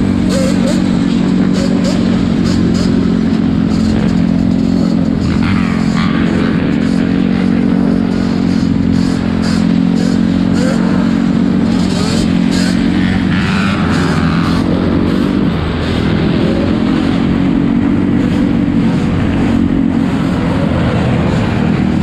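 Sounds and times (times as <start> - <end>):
atv engine running: 0.0 - 22.0.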